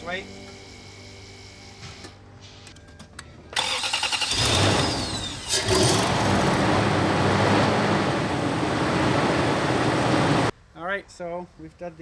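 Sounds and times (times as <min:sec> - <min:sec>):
starter cranking engine: 0:03.6 - 0:07.1
engine running: 0:03.6 - 0:10.5.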